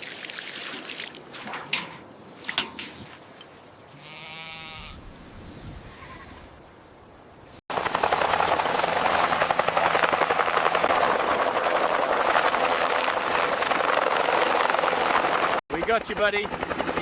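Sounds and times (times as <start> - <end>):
helicopter rotor chopping: 7.7 - 17.0.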